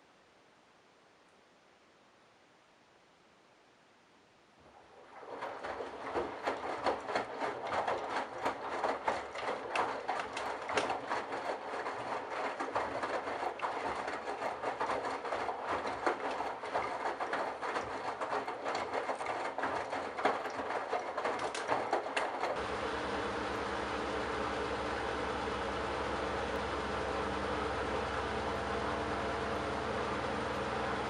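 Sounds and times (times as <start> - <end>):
water sloshing: 4.8 - 31.0
washing machine drum turning: 5.2 - 20.6, 21.4 - 31.0
irregular clicks and knocks: 13.4 - 22.6.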